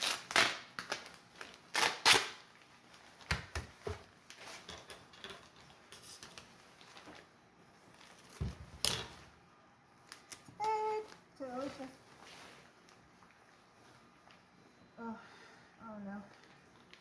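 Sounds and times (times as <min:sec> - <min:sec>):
duct tape ripping: 0:00.0 - 0:02.5
tape crackles and taps: 0:02.6 - 0:07.3.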